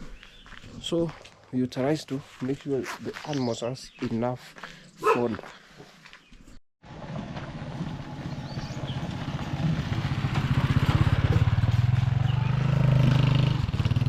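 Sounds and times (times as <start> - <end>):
motorcycle engine approaching: 6.8 - 14.0.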